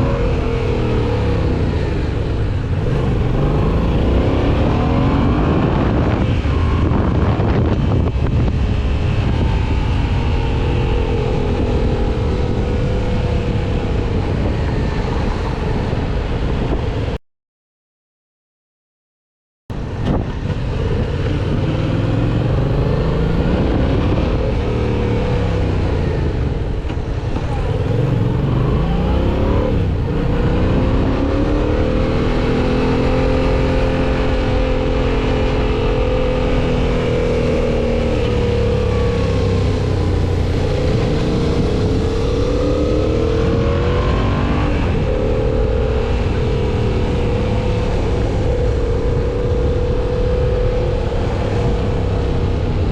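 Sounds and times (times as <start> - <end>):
motorcycle engine accelerating: 0.0 - 17.2, 19.8 - 52.9.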